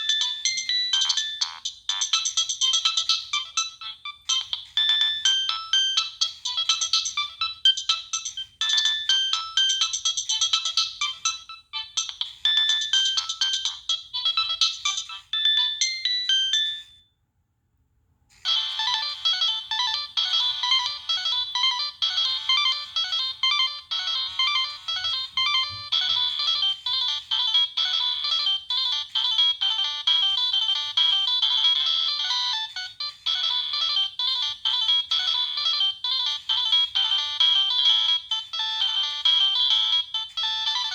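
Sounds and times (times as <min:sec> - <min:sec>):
phone ringtone tunes: 0:00.0 - 0:17.0, 0:18.4 - 0:40.9.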